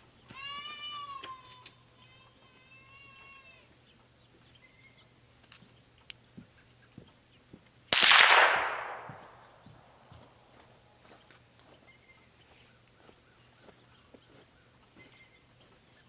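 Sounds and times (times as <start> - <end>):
rifle shot with echo: 7.9 - 9.7.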